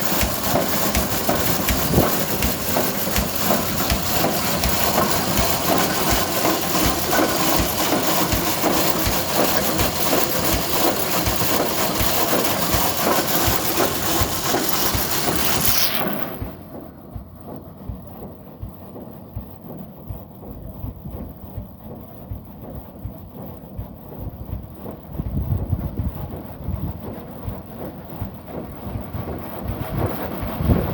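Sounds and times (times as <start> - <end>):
road roller engine thudding: 0.0 - 17.2
mechanical clatter: 0.0 - 19.8.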